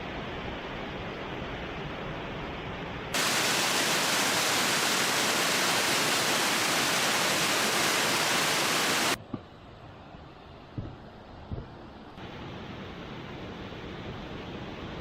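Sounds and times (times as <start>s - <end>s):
waterfall rushing: 3.2s - 9.2s.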